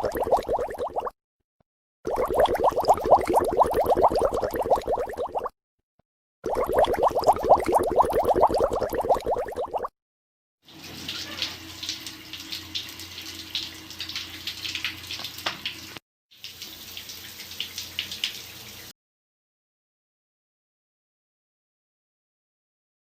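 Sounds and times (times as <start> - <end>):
rapid bubbling plops: 0.0 - 1.2, 2.1 - 5.6, 6.4 - 9.9
running splashing water: 10.7 - 18.9.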